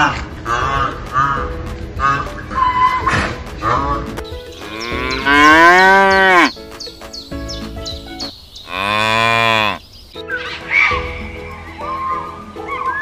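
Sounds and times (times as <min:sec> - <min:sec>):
cow mooing: 0:04.6 - 0:06.5, 0:08.6 - 0:09.8.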